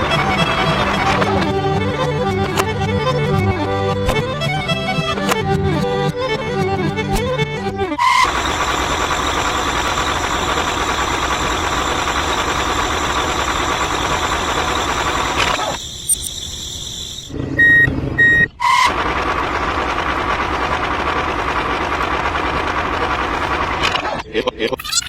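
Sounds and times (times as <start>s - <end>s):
small motor whining: 0.0s - 17.3s
short high beeps: 12.4s - 18.9s.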